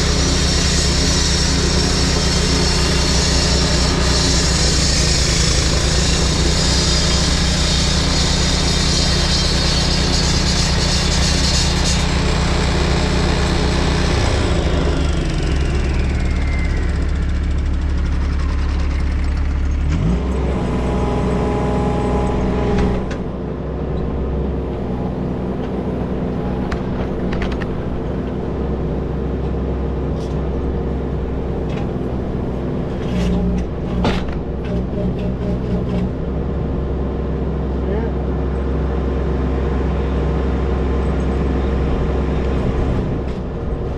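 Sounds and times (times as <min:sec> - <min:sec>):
concrete saw cutting hiss: 0:00.0 - 0:15.6
saw blade spinning down whine: 0:00.0 - 0:19.8
engine running: 0:00.0 - 0:43.9.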